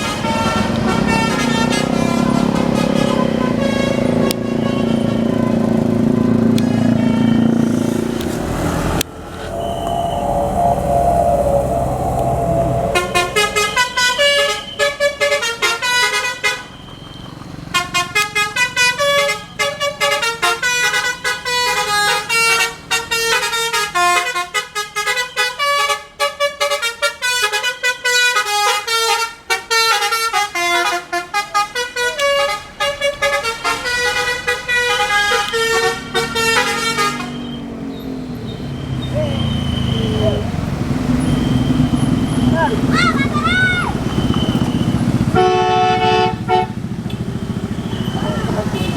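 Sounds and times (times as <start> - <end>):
musical air horn melody: 9.0 - 16.0.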